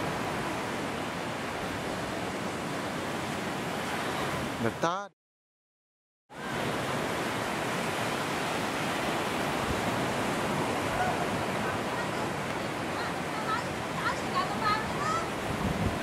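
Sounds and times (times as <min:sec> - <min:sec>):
strong storm wind rushing: 0:09.1 - 0:16.0.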